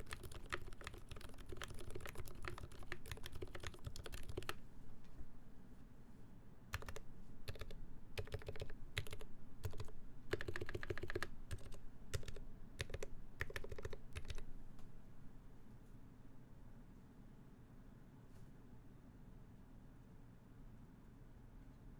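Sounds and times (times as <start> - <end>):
mechanical keyboard typing: 0.0 - 4.6, 6.7 - 14.5.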